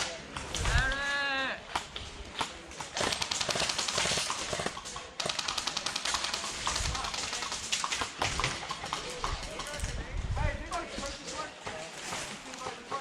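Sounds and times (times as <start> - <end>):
airsoft gun firing bursts: 2.8 - 7.7.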